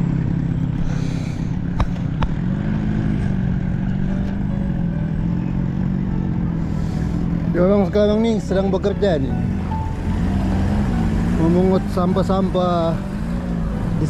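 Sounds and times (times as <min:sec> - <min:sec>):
vehicle engine humming: 0:00.0 - 0:14.0.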